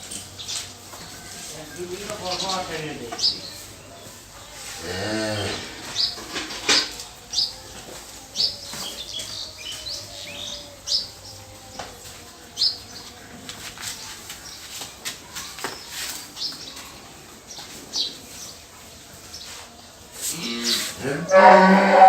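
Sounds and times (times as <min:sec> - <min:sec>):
small birds chirping: 0:00.0 - 0:21.4
cow mooing: 0:04.8 - 0:05.8, 0:20.4 - 0:22.0.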